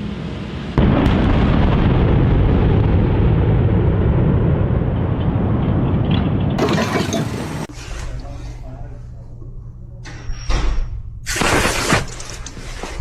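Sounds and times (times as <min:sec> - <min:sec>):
loud low rumbling: 0:00.8 - 0:07.8.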